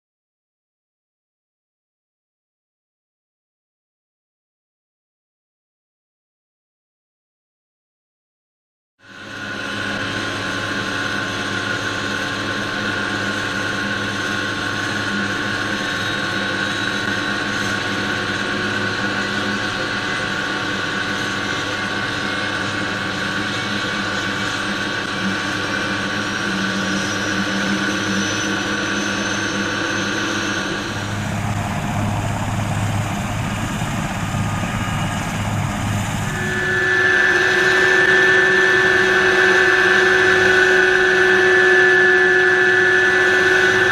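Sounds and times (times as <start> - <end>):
helicopter turbine whine: 9.0 - 43.9
loud high whine: 9.0 - 43.9.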